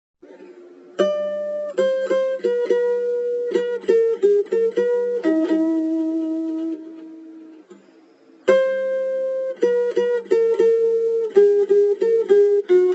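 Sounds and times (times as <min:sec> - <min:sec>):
plucked string melody: 0:00.2 - 0:12.9.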